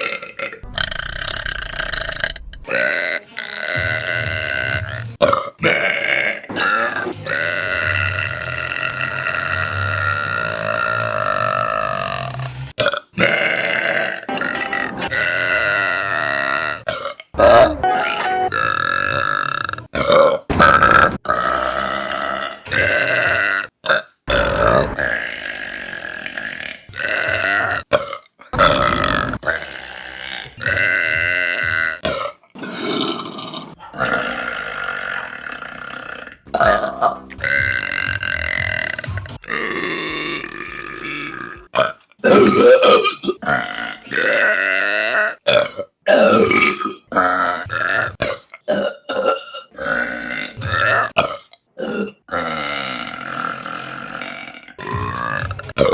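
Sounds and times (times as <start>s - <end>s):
woman burping: 21.3s - 55.9s.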